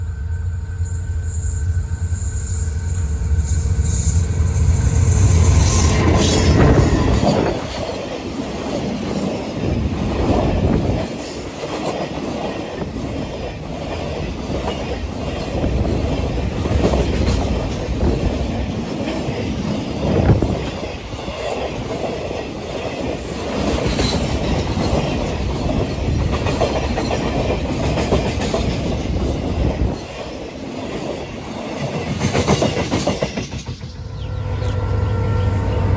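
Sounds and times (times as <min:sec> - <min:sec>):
train wheels clickety-clack: 0:00.0 - 0:34.8
locomotive engine drone: 0:33.9 - 0:35.9.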